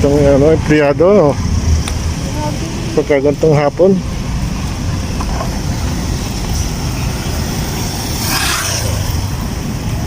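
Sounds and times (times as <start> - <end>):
vehicle rumble: 0.0 - 10.0
short hiss: 8.2 - 9.2.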